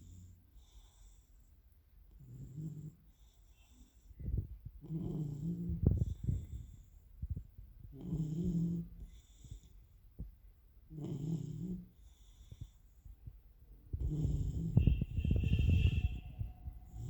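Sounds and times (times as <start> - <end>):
dog snoring: 0.0 - 1.3, 2.1 - 4.2, 4.8 - 6.9, 7.9 - 9.7, 10.9 - 13.0, 13.9 - 15.0
dog breathing: 0.0 - 10.0, 10.9 - 15.5.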